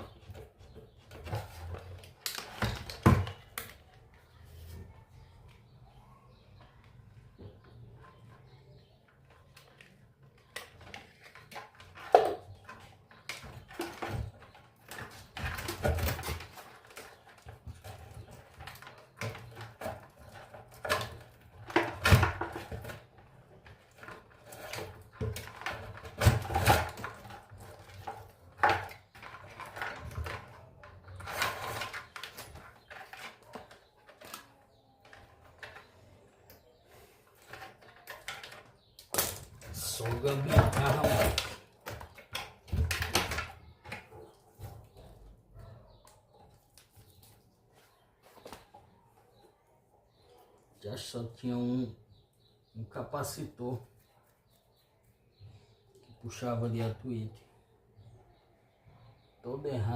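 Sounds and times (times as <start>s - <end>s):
tools knocking and scraping: 0.0s - 4.8s, 7.3s - 47.3s.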